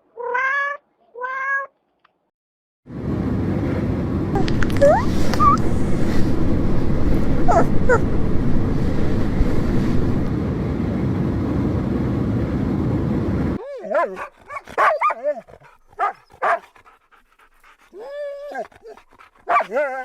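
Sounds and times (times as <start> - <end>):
dog whining and yipping: 4.7 - 5.7, 7.5 - 8.1, 13.6 - 17.0, 17.6 - 20.0.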